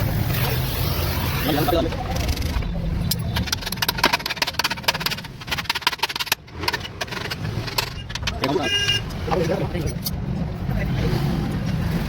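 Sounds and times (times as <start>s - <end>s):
hard objects tapping and clicking: 2.2s - 10.2s.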